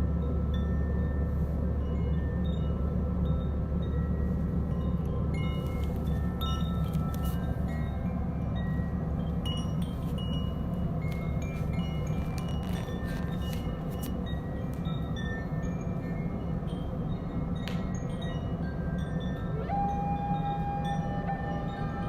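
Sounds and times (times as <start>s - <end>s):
high bell-like tones: 13.7s - 22.0s
gong drone: 15.2s - 22.0s.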